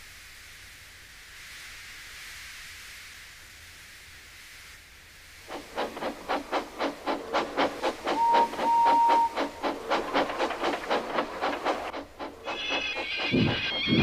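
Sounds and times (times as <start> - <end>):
steam locomotive chuffing: 5.4 - 14.0
steam whistle: 8.1 - 10.2.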